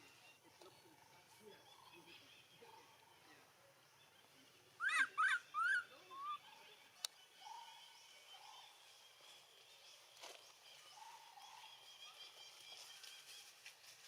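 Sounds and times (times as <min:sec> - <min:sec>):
baby monkey crying: 0:04.8 - 0:06.4.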